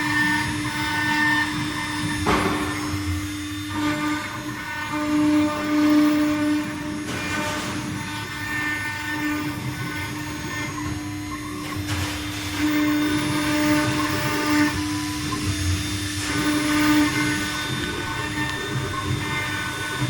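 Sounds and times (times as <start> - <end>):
router spindle whine: 0.0 - 20.0
bit grinding stone: 7.0 - 20.0.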